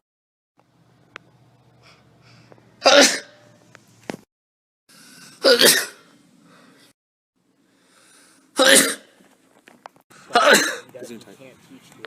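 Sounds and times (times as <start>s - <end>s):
person sneezing: 2.8s - 3.4s, 5.3s - 6.1s, 8.5s - 9.2s, 10.3s - 10.9s.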